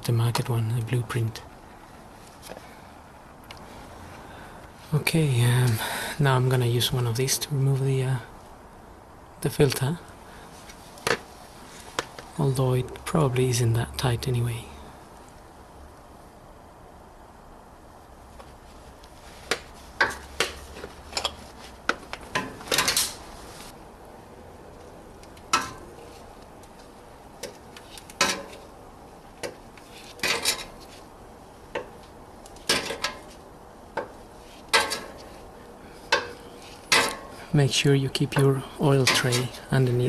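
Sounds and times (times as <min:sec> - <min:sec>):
wrench clanking on metal filter: 0:38.4 - 0:39.6.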